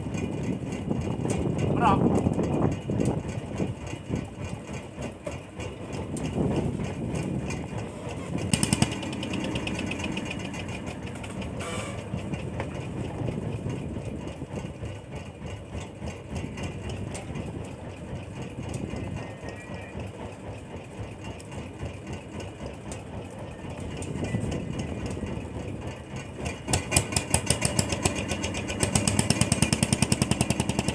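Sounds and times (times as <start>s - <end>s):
boat engine rumbling: 0.0s - 30.9s.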